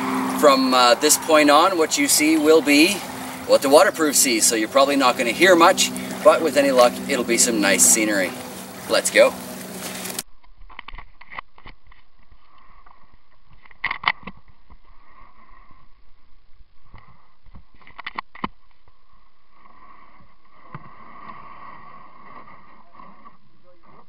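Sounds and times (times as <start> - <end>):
dull water hiss: 0.0 - 10.2.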